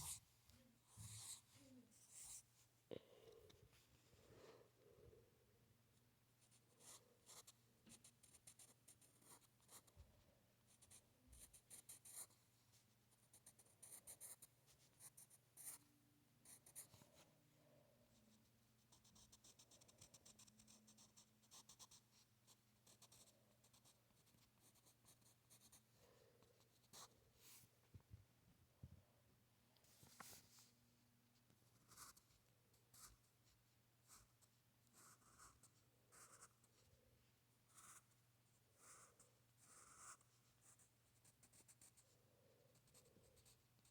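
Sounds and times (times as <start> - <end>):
pencil scratching on paper: 6.5 - 10.0, 10.7 - 12.4, 13.2 - 15.8, 16.4 - 17.1, 18.9 - 25.8, 34.1 - 36.8, 37.7 - 38.2, 38.8 - 42.0.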